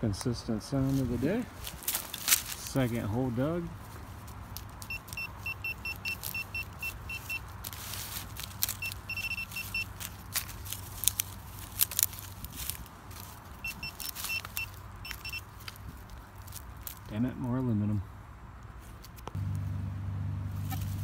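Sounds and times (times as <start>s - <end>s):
digging clicks and scrapes in mud: 0.9s - 3.0s, 3.8s - 17.2s
metal detector beeps: 4.8s - 7.5s, 8.7s - 9.9s, 13.6s - 15.5s.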